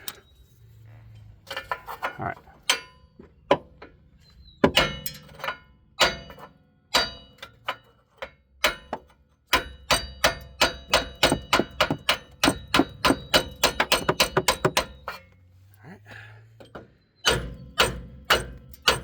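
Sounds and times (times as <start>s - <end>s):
hammer striking metal: 8.6s - 15.0s, 17.2s - 19.0s.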